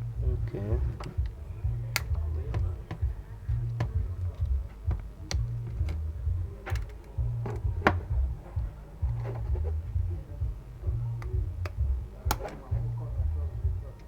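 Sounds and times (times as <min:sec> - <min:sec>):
music with pulsing bass: 0:00.0 - 0:14.0
sharp plastic clicks: 0:00.9 - 0:08.2, 0:11.2 - 0:12.9.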